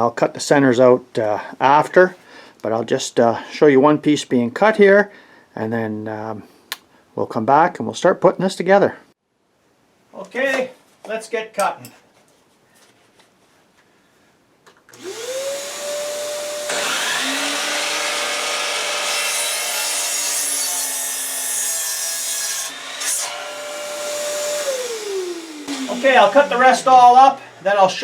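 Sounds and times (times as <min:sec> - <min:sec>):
miter saw motor whine: 0:15.0 - 0:18.6, 0:22.8 - 0:27.7
saw blade cutting wood: 0:15.0 - 0:27.8.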